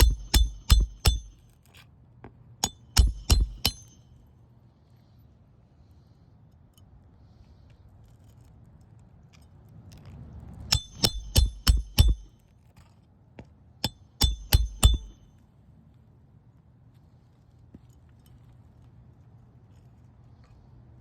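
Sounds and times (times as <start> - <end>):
hammer striking nails: 0.0 - 1.4, 2.6 - 4.0, 10.7 - 12.3, 13.8 - 15.2.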